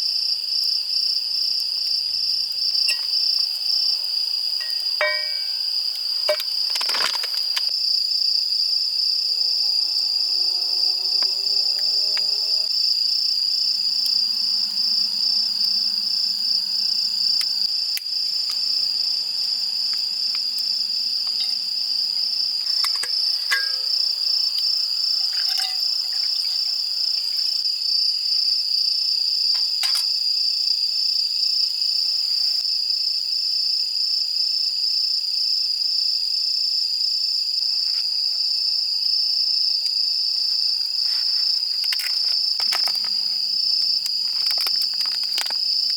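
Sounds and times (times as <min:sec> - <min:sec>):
insects chirping in a high trill: 0:00.0 - 0:45.9.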